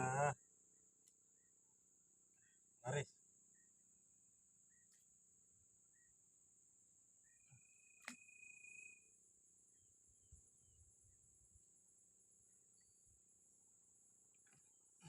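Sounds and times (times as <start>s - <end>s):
insects droning: 0.0s - 15.0s.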